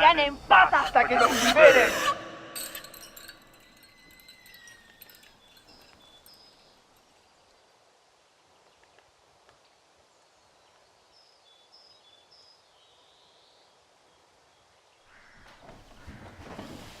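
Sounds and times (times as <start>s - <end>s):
sliding bird call: 0.9s - 5.4s
rustling noise: 15.4s - 17.0s.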